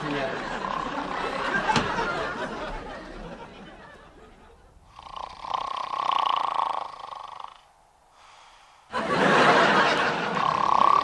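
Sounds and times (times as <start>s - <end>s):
man snoring: 4.9s - 8.5s, 10.2s - 11.0s.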